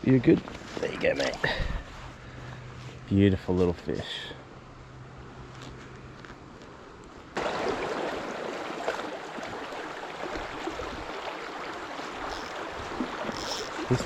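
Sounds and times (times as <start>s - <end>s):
small stream running: 0.0s - 2.8s, 7.3s - 14.0s.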